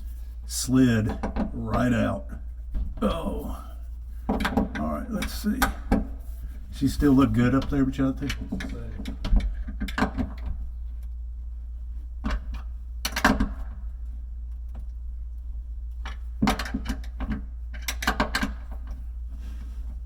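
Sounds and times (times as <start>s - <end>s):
low hum: 0.0s - 9.5s.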